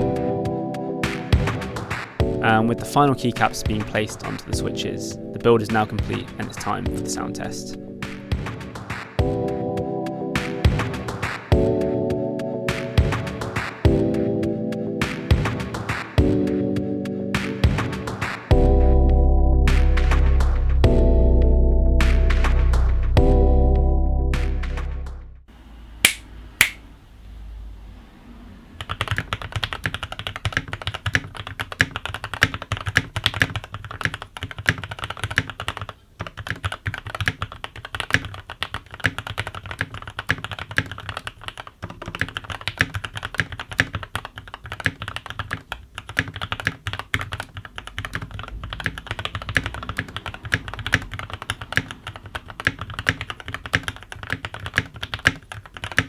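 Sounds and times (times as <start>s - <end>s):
mechanical keyboard typing: 28.8s - 56.0s.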